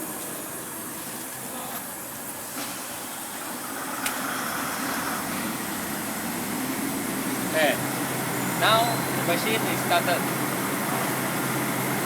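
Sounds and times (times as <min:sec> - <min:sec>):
diesel engine starting: 0:02.5 - 0:12.0.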